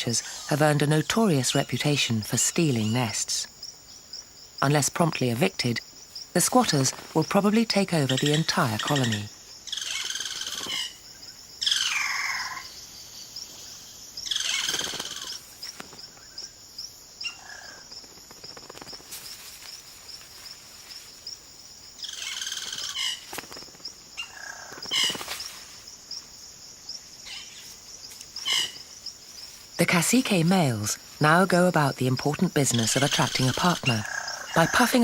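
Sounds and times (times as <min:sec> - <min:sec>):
birds calling loudly: 0:00.0 - 0:17.9, 0:22.0 - 0:25.5, 0:28.3 - 0:29.2
high insect trill: 0:00.0 - 0:35.0.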